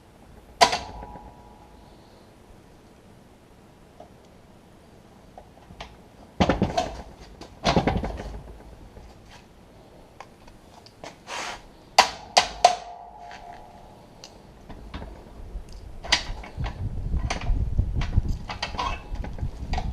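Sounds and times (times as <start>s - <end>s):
sharp metal strikes with ringing: 12.2s - 14.1s.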